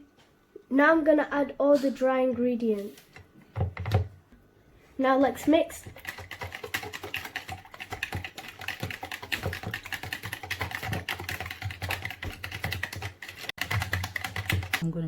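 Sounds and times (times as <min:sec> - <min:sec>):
whisk clicking against bowl: 0:05.8 - 0:14.8.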